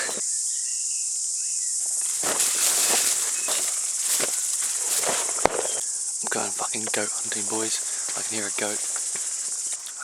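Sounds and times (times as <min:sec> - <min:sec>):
high-pitched insect chorus: 0:00.0 - 0:10.0
rustling and scuffing: 0:01.8 - 0:05.8, 0:07.0 - 0:09.9.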